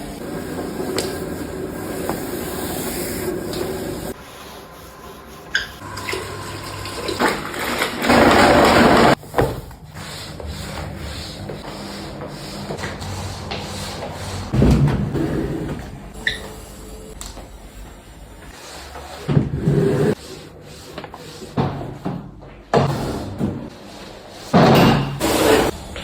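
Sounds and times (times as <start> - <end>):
water running and splashing: 5.8 - 9.2.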